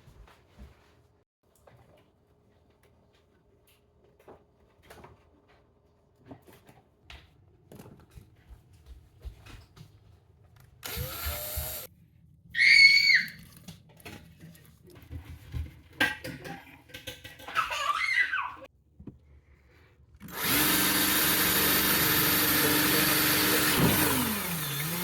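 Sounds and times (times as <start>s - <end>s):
power drill burst: 10.8s - 11.9s, 20.2s - 25.0s.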